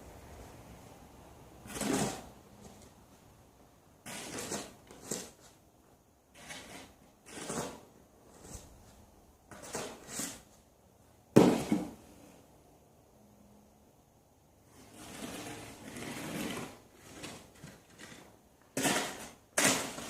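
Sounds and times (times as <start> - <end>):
snow shovel scraping snow: 14.8 - 18.2, 18.8 - 20.0.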